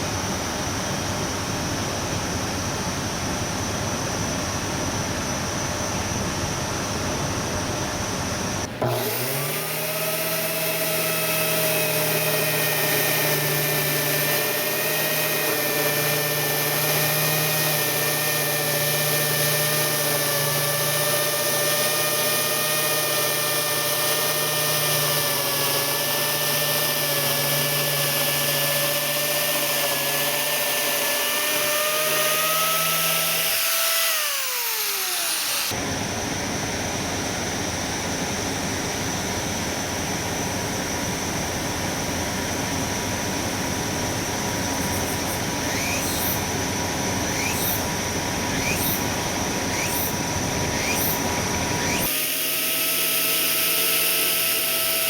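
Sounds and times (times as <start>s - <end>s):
motor whining: 8.5s - 35.8s, 44.6s - 55.0s.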